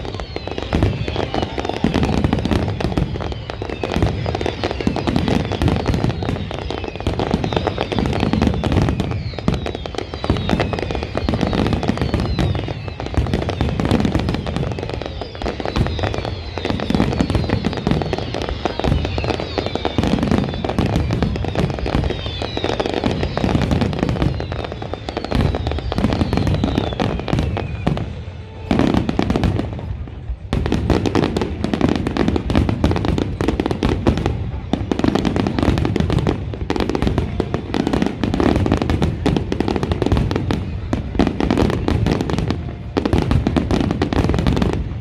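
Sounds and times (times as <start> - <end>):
fireworks bangs and crackling: 0.0 - 45.0.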